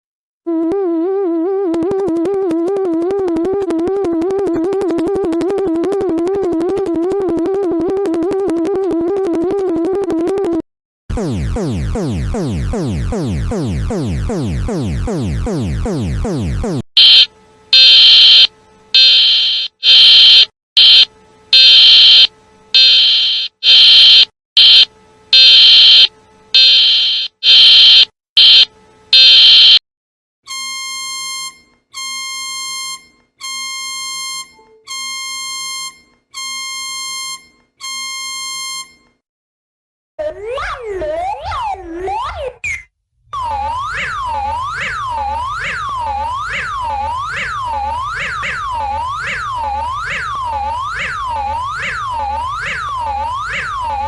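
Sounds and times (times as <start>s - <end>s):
harsh electronic blasts: 11.1s - 19.1s
shrill beeps: 17.0s - 29.8s
downward sweeping alarm tone: 43.4s - 54.0s.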